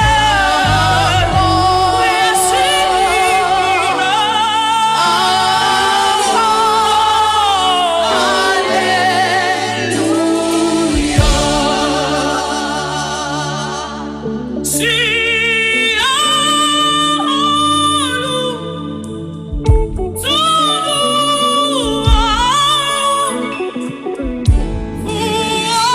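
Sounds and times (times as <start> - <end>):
bass: 0.0 - 5.0, 9.9 - 20.8, 21.8 - 22.9, 24.2 - 25.9
gospel singing: 0.0 - 19.6, 20.2 - 25.9
keyboard chords: 0.0 - 25.9.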